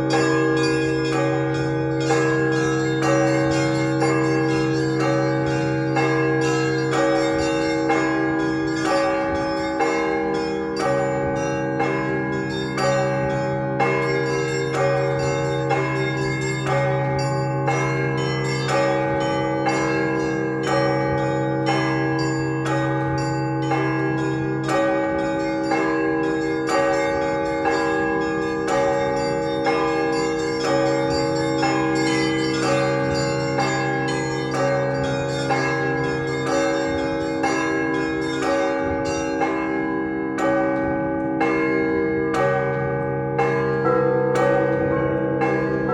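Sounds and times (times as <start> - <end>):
church bells pealing: 0.0 - 45.9
larger bells ringing: 0.0 - 45.9.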